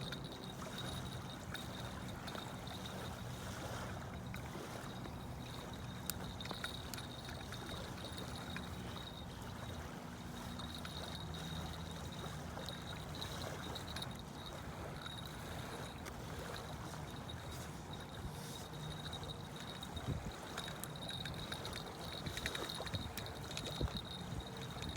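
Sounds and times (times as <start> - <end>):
moving water: 0.0 - 24.9.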